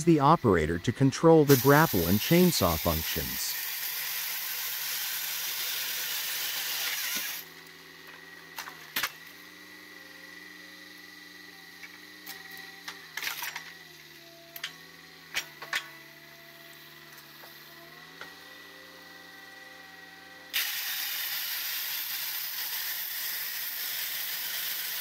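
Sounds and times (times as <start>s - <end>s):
machine hum: 0.0s - 4.4s
loud hiss: 1.2s - 3.9s.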